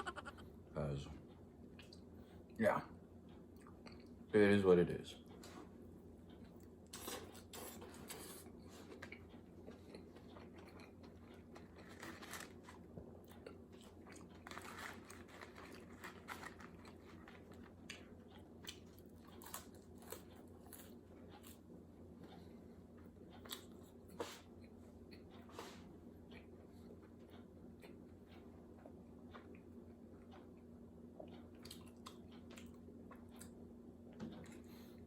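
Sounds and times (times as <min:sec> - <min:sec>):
chewing with wet mouth clicks: 0:03.5 - 0:04.2, 0:06.4 - 0:12.0, 0:13.2 - 0:14.4, 0:28.8 - 0:33.6.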